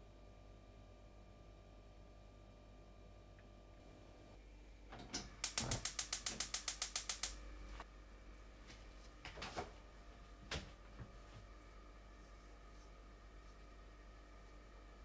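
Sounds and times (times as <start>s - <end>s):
single clicks: 5.2s - 7.4s
mechanism clicking rapidly: 5.4s - 7.4s.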